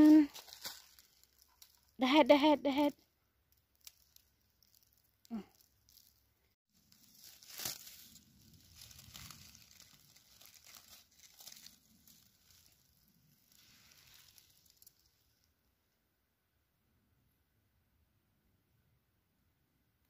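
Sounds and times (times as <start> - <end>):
rustling of dry leaf litter: 0.0 - 2.0, 3.7 - 15.5.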